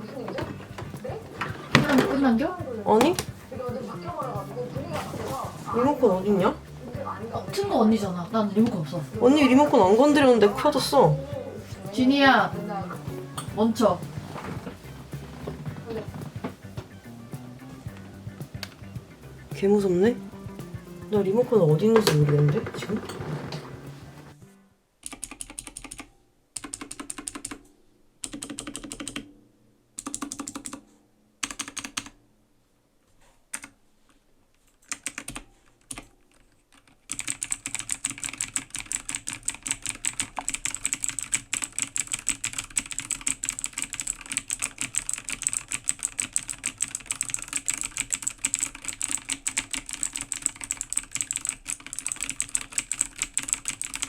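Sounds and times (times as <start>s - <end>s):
clicky keyboard typing: 25.0s - 29.3s, 30.0s - 30.8s, 31.4s - 32.2s, 34.8s - 54.0s.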